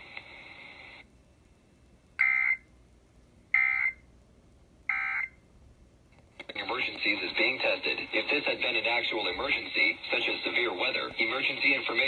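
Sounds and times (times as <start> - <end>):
shrill data tone bursts: 3.6 - 4.0, 4.9 - 5.4.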